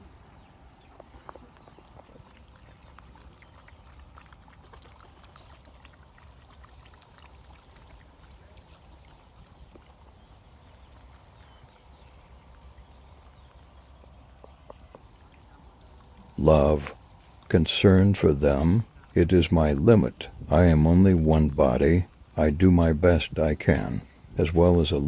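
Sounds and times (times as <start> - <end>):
dogs chewing food: 0.0 - 25.0.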